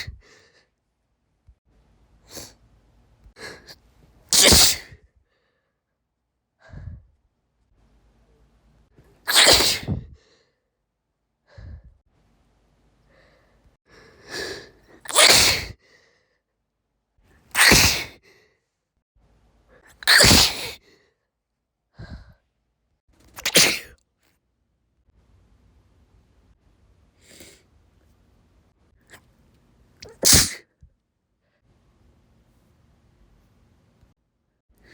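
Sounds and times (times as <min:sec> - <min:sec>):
woman sneezing: 0:04.3 - 0:05.0, 0:09.3 - 0:10.1, 0:15.0 - 0:15.8, 0:17.5 - 0:18.2, 0:20.0 - 0:20.8, 0:23.4 - 0:24.0, 0:30.0 - 0:30.7
short breaths: 0:09.8 - 0:10.7, 0:11.5 - 0:12.0, 0:22.0 - 0:22.5.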